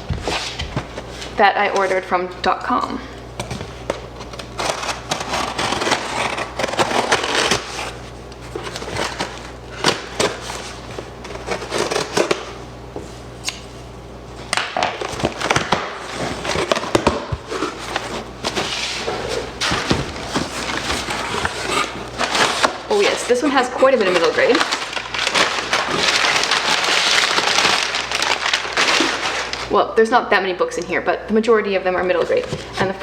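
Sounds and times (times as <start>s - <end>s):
cardboard box being unpacked: 3.4s - 12.6s, 14.5s - 29.7s.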